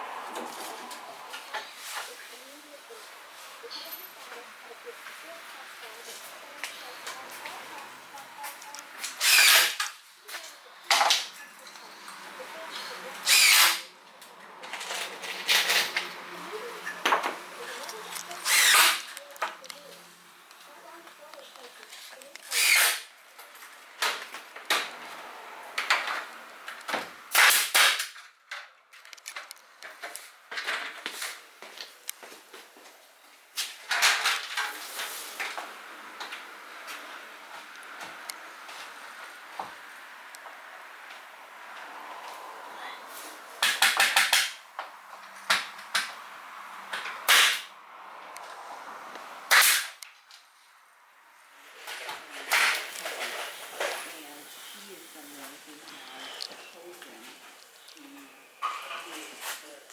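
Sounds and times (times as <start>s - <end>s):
scraping noises: 0.0s - 26.4s, 51.7s - 59.9s.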